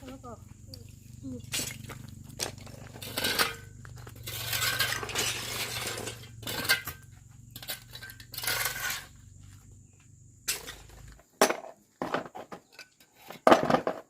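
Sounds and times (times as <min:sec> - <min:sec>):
small hard objects clinking: 0:00.7 - 0:09.3
scraping or rustling: 0:01.4 - 0:09.7.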